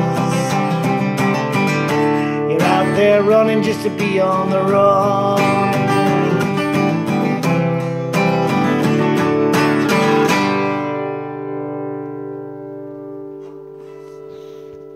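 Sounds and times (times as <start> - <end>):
acoustic guitar strumming: 0.0 - 14.9.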